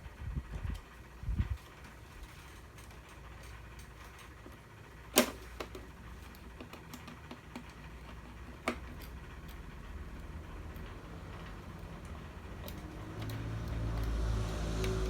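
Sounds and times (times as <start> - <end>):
sharp clicks and ticks: 6.2 - 15.0
model truck humming: 9.0 - 15.0.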